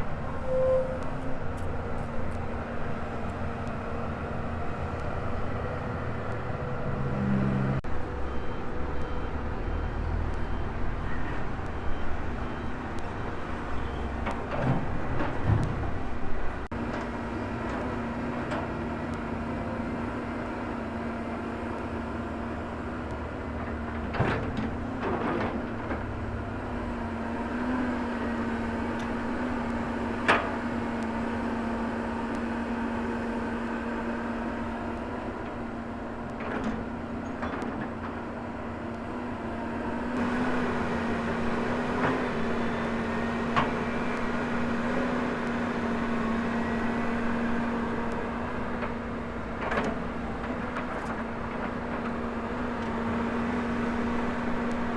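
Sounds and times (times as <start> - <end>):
excavator engine and hydraulics: 0.0 - 54.9.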